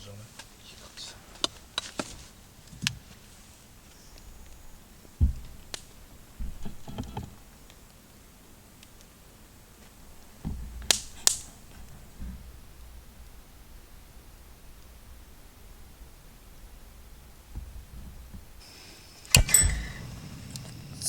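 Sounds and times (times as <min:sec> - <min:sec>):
sharp clicks: 0:19.3 - 0:20.0.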